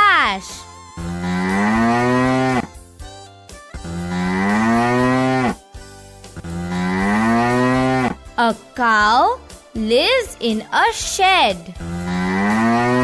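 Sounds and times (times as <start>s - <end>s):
cow mooing: 1.1s - 2.7s, 3.9s - 5.6s, 6.4s - 8.2s, 11.9s - 13.0s.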